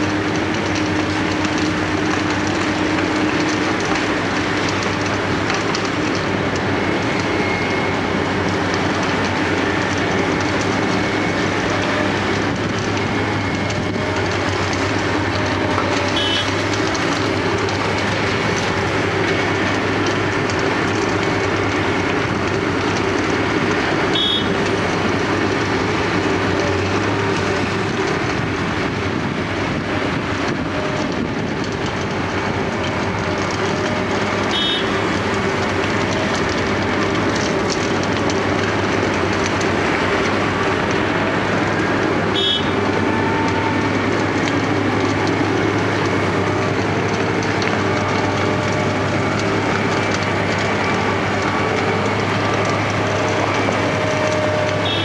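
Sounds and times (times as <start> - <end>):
milling machine grinding asphalt: 0.0 - 55.0.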